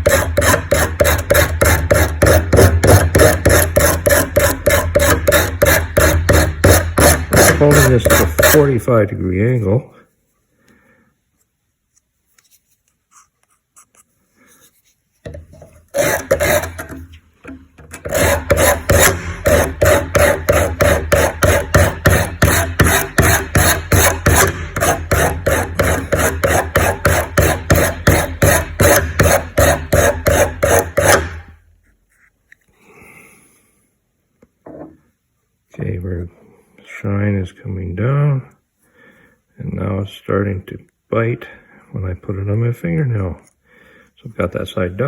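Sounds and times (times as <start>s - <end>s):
tool grinding on diamond hone: 0.0s - 8.9s, 15.3s - 31.6s.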